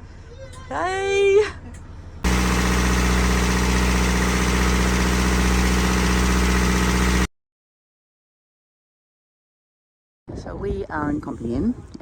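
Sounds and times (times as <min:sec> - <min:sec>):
boat engine droning: 0:02.3 - 0:07.3.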